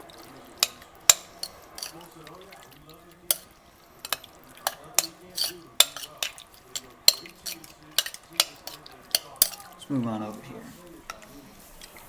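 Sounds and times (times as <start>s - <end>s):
metal spoon clinking in bowl: 0.0s - 9.9s.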